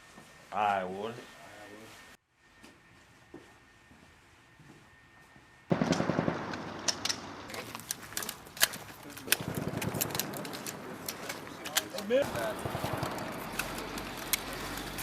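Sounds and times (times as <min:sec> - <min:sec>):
rapid rifle shots: 0:05.7 - 0:07.5, 0:09.2 - 0:14.8.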